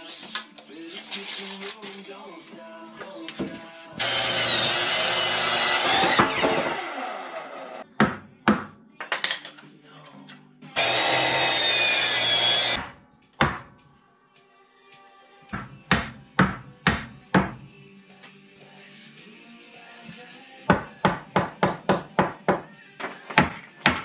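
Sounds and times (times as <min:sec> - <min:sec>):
power saw cutting wood: 0:04.0 - 0:07.8, 0:10.8 - 0:12.8.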